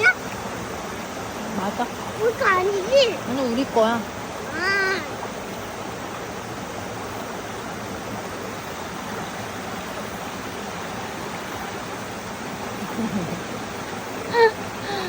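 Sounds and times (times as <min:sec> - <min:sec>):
mountain stream rushing: 0:00.0 - 0:15.0.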